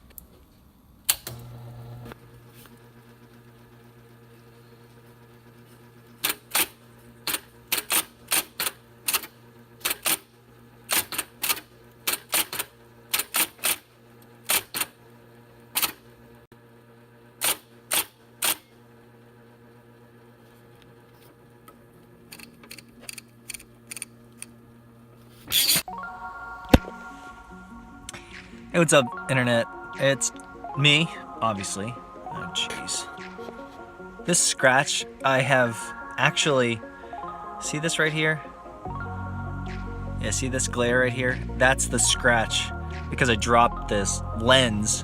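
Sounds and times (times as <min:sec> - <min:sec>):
typewriter motor hum: 0:01.1 - 0:02.2, 0:06.1 - 0:10.3, 0:10.9 - 0:15.0, 0:15.7 - 0:16.0, 0:17.4 - 0:18.7.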